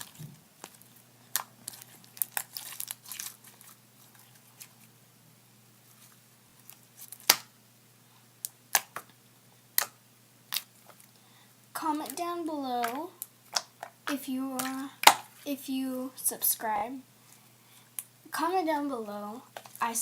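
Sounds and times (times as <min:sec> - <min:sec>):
slime clicking and popping: 0:08.4 - 0:09.1, 0:12.8 - 0:14.0, 0:14.6 - 0:15.3.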